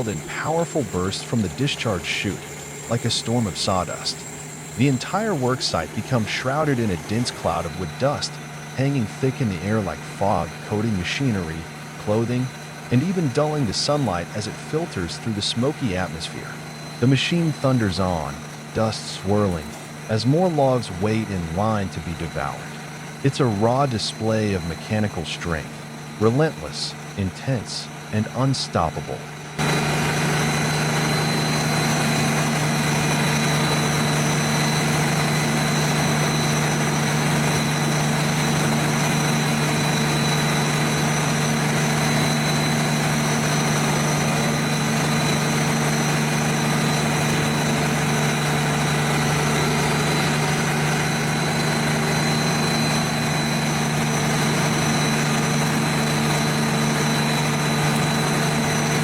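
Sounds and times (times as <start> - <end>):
wood chipper droning: 0.0 - 59.0.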